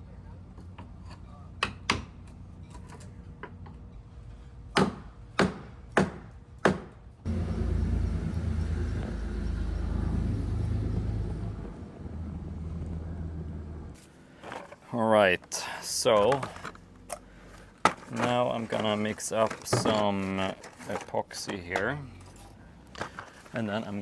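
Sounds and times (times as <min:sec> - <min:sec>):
low machine rumble: 0:07.3 - 0:14.0.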